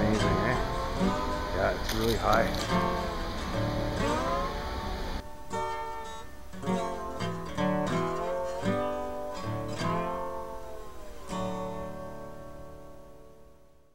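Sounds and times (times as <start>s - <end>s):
acoustic guitar strumming chords: 0.0s - 13.9s.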